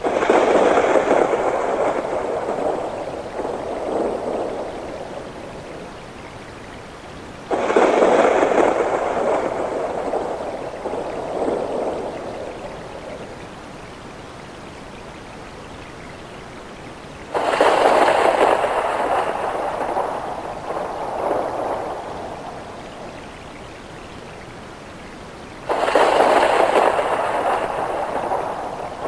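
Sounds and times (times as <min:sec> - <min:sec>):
thunder rolling: 0:00.0 - 0:06.2, 0:07.5 - 0:13.6, 0:17.3 - 0:23.5, 0:25.7 - 0:29.0
steady rain: 0:00.0 - 0:29.0.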